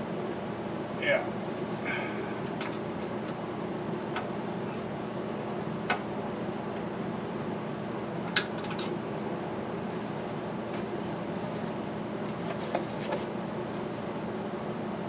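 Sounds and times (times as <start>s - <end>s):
steady fan-like hum: 0.0s - 15.0s.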